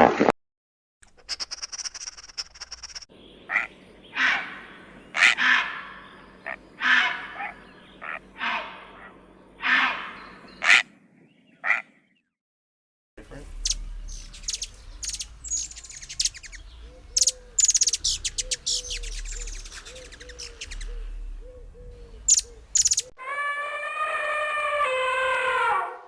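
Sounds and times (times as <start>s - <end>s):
small birds chirping and trilling: 1.1s - 12.4s, 13.2s - 23.2s
animal long held call: 3.5s - 10.8s, 16.9s - 26.0s.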